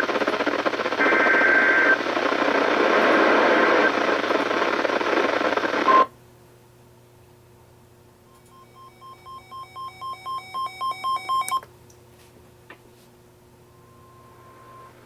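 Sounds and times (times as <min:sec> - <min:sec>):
warbling data tones: 0:00.0 - 0:04.3
radio static: 0:00.0 - 0:06.1
faint hum: 0:00.0 - 0:15.0.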